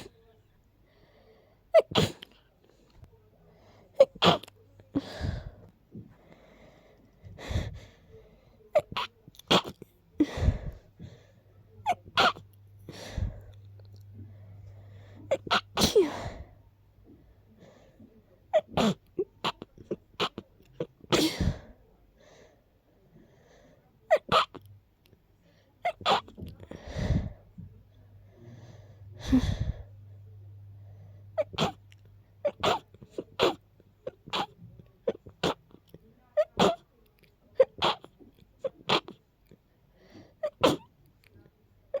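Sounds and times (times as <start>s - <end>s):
person sneezing: 1.8s - 2.4s, 4.0s - 5.5s, 11.9s - 13.4s, 15.3s - 16.5s, 21.1s - 21.7s, 25.8s - 27.3s, 31.4s - 31.8s, 32.5s - 33.6s, 34.2s - 35.7s, 37.6s - 39.2s, 40.4s - 40.9s.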